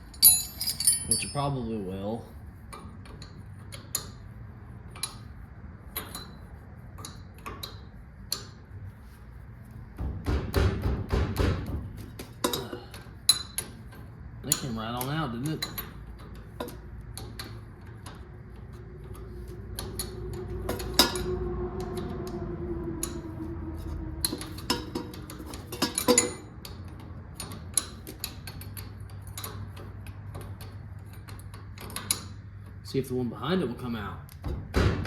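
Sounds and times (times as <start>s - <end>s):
metal tools clinking on fittings: 0.0s - 1.8s, 14.4s - 18.2s
steady low tone: 17.4s - 27.0s.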